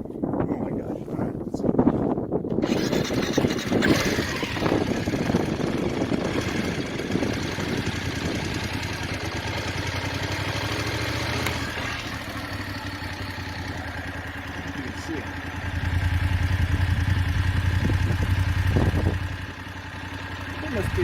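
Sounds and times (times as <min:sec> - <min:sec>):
engine ticking: 0:02.6 - 0:21.0
motorcycle engine idling: 0:02.6 - 0:21.0.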